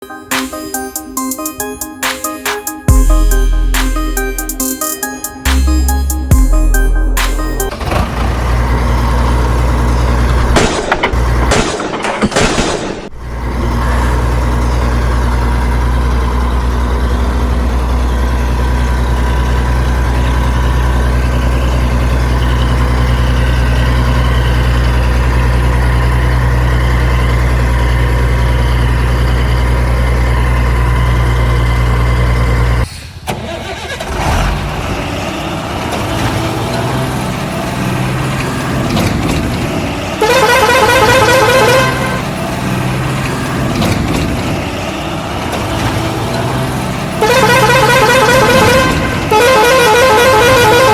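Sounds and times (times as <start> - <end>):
rough busy engine: 0.0 - 50.9
heavy vehicle engine idling: 5.4 - 11.5, 13.2 - 50.9
horn blast: 40.2 - 42.4, 47.2 - 50.9.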